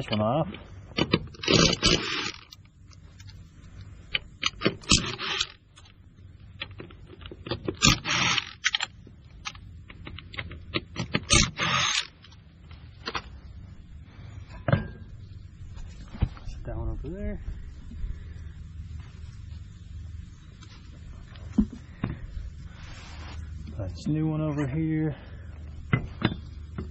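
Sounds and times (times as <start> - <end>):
lug nuts scraping and rattling: 0.9 - 12.4.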